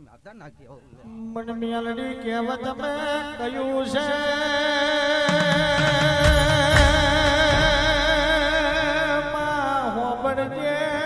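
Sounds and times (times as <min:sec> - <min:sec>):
low sounds: 0:05.3 - 0:10.3.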